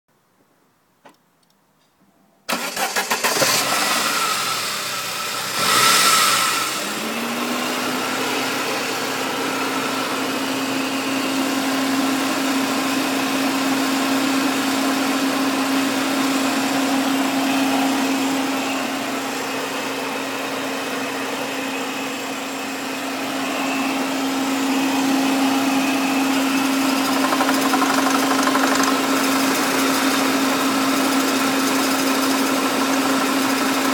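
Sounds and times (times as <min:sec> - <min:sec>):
starter motor cranking: 0:02.5 - 0:04.2, 0:26.6 - 0:33.9
car engine idling: 0:02.5 - 0:13.2, 0:15.4 - 0:33.9.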